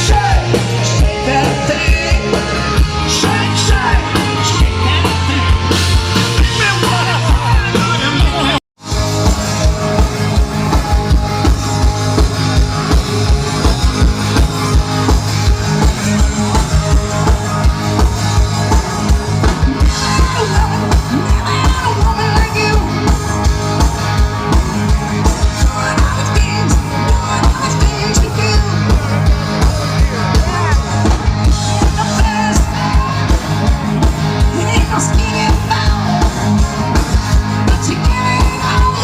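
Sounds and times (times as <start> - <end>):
drum-kit beat: 0.0 - 39.0
live rock band playing: 0.0 - 39.0
person singing: 19.8 - 23.1.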